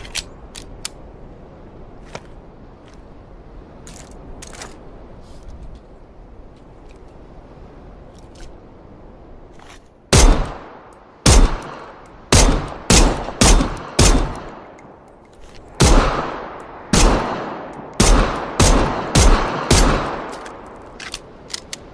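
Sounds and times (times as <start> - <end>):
low background noise: 0.0 - 21.9
pistol shots: 10.1 - 10.6, 11.3 - 14.6, 15.8 - 20.3.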